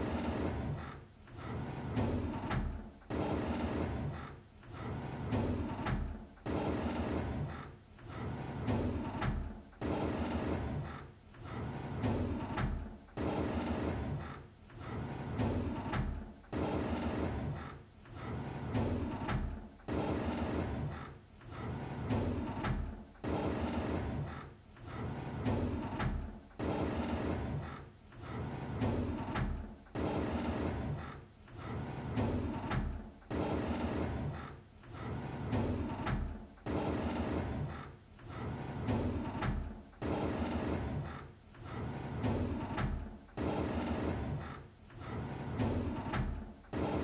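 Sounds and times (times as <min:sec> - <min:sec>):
drawer runners rumbling: 0:41.7 - 0:47.0.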